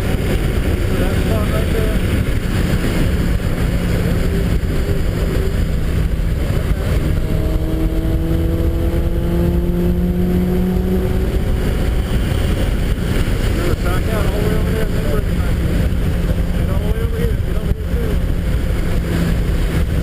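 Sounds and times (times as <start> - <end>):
car engine accelerating: 0.0 - 20.0
road noise rushing: 0.0 - 20.0.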